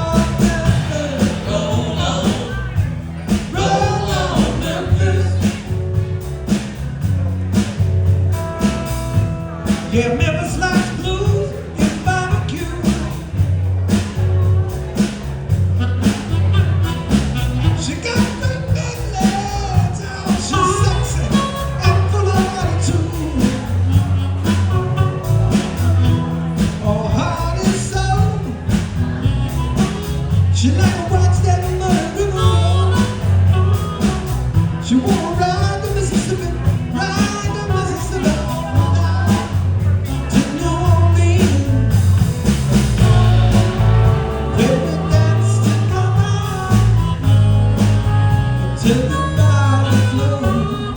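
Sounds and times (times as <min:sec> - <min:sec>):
heavy bass line: 0:00.0 - 0:50.9
live rock band playing: 0:00.0 - 0:50.9
steady drum beat: 0:00.0 - 0:50.9.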